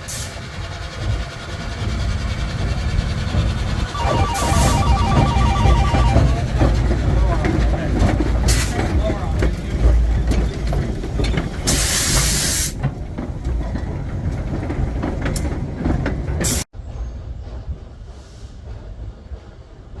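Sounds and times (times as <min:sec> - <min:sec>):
train rumbling: 0:00.4 - 0:20.0.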